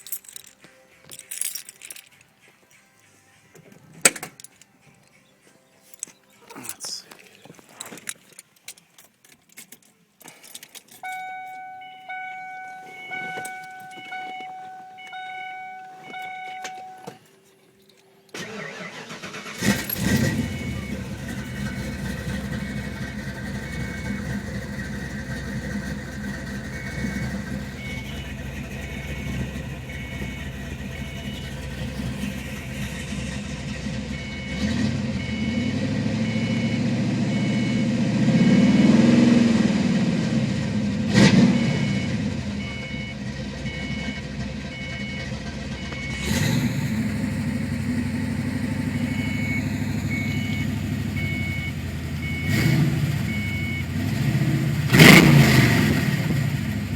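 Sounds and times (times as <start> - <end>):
faint high-pitched beeping: 11.0 - 18.3, 20.0 - 24.5, 26.3 - 38.9, 41.5 - 46.4, 48.1 - 53.9
car engine idling with misfire: 18.4 - 56.9.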